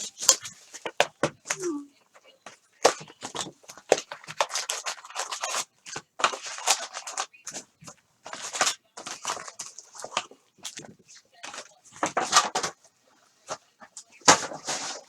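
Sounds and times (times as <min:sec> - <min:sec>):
plastic wrapping crinkling and tearing: 0:02.8 - 0:12.8.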